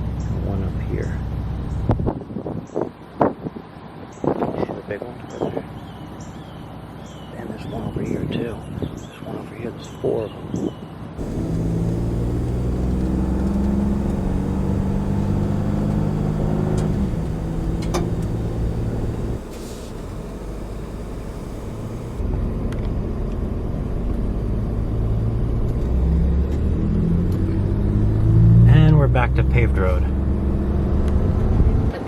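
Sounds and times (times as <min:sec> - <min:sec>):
sharp clicks: 0:11.2 - 0:22.2
truck driving on gravel: 0:11.2 - 0:22.2.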